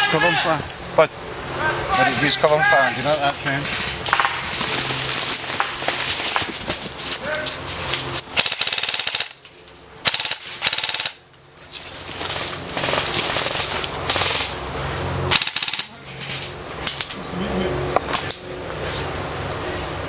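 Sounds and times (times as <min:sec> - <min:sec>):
airsoft guns firing bursts: 0:08.4 - 0:09.4, 0:10.0 - 0:11.2, 0:15.3 - 0:16.0.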